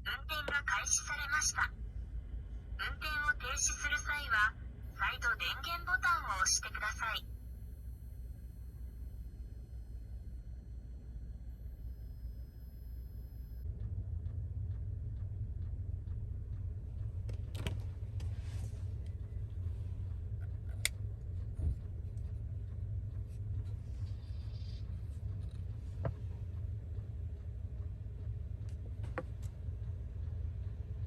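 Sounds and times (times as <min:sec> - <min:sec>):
heater fan and burner rumble: 0:01.6 - 0:02.8, 0:13.6 - 0:31.0.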